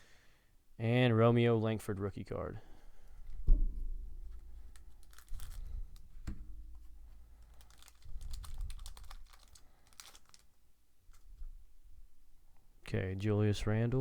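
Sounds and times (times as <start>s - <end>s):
small knock: 3.4s - 4.5s
cards clicking and rustling: 4.7s - 6.1s, 7.4s - 10.5s.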